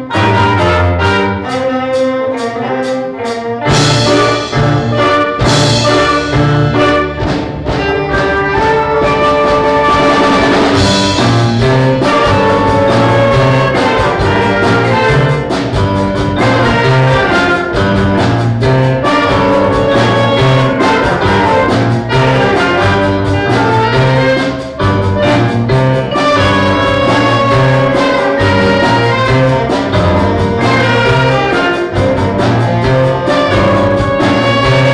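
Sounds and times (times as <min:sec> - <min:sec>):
concert band playing: 0:00.0 - 0:34.9.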